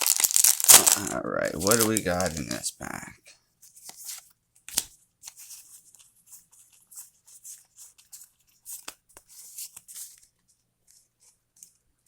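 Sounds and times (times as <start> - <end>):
foil wrapper tearing and crinkling: 0.0 - 2.6.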